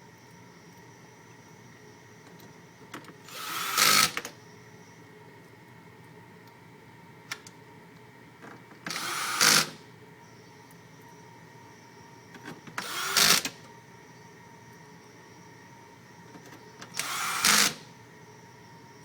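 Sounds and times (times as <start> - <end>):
powered screwdriver driving screws: 3.3 - 4.2, 8.9 - 9.7, 12.8 - 13.5, 16.9 - 17.8.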